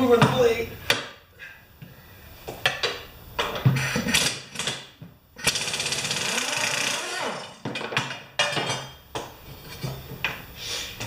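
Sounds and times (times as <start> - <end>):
impact wrench hammering rattle: 3.8 - 7.8.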